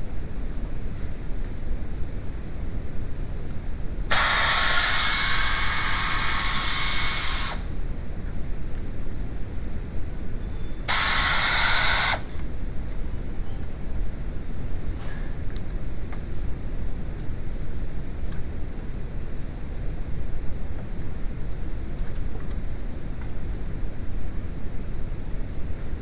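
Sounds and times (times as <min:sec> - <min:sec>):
steady low rumble: 0:00.0 - 0:26.0
sharp hissing bursts: 0:04.1 - 0:07.7, 0:10.9 - 0:12.3.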